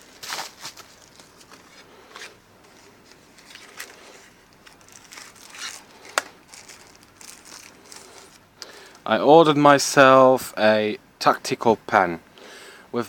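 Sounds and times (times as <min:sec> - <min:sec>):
packaging crinkling and rustling: 0:00.0 - 0:09.0.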